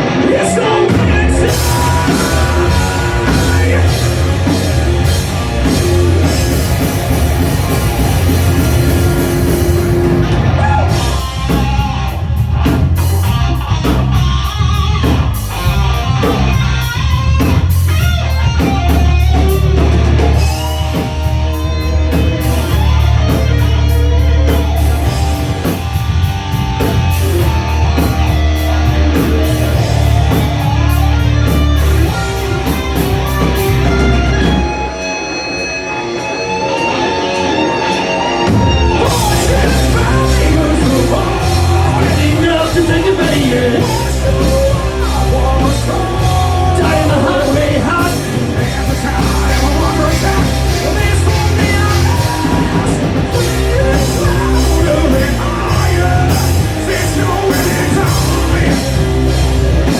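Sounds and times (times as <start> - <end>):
live rock band playing: 0.0 - 59.9
person singing: 0.2 - 11.9, 36.7 - 59.9.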